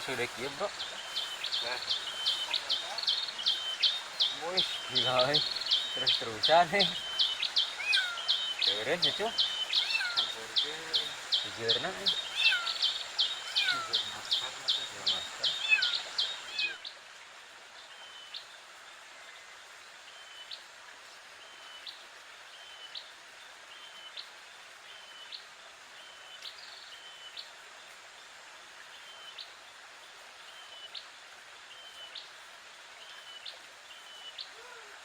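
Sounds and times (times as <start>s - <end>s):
bird calling: 0.0s - 16.8s
running water hiss: 0.0s - 35.0s.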